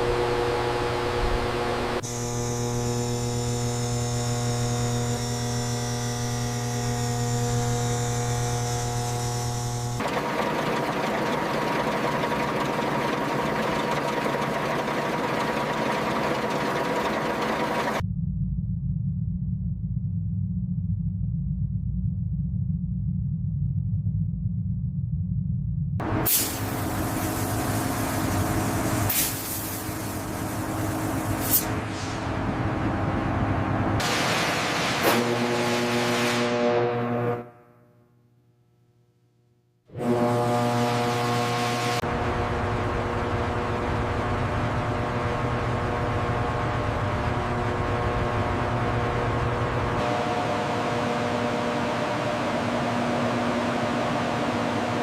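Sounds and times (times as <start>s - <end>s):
horn-like drone: 0.0s - 10.0s, 35.1s - 37.7s, 39.9s - 43.1s, 50.0s - 53.2s
mechanical hum: 0.0s - 18.0s, 26.0s - 37.4s, 39.9s - 55.0s
faint humming tones: 0.0s - 24.7s
machinery low rumble: 6.2s - 29.1s, 29.8s - 34.0s, 42.0s - 55.0s
short sharp air release hisses: 26.2s - 32.3s.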